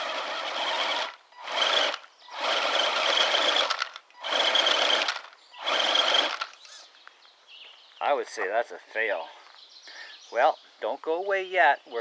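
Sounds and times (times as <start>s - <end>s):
electric motor and gearbox whining: 0.0s - 6.9s.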